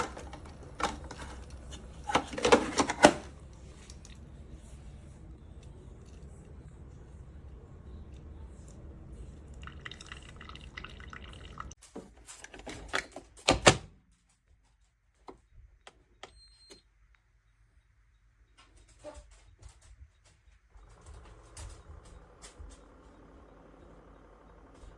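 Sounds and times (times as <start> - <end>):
clunks of handling: 0.0 - 4.0
coffee maker brewing: 0.0 - 11.8
liquid dripping: 3.2 - 11.8.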